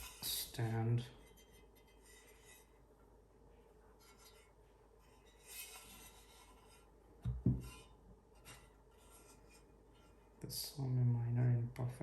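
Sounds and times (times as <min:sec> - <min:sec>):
dull thumps: 0:07.2 - 0:07.7.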